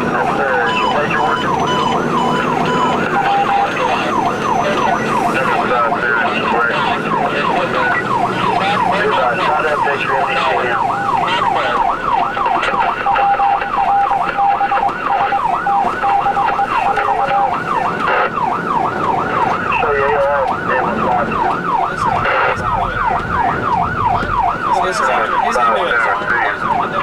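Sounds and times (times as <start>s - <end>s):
electronic siren yelping: 0.0s - 27.0s.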